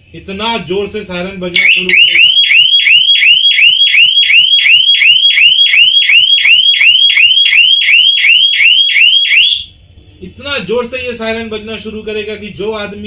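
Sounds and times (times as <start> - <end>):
alarm siren rising whoop: 1.6 - 9.7.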